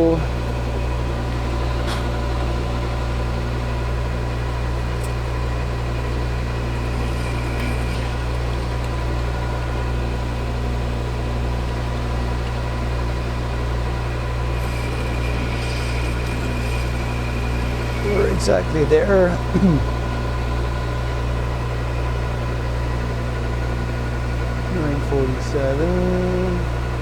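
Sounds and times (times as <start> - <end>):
metal lathe humming: 0.0 - 27.0
boring bar cutting metal: 4.8 - 10.6, 14.0 - 20.3.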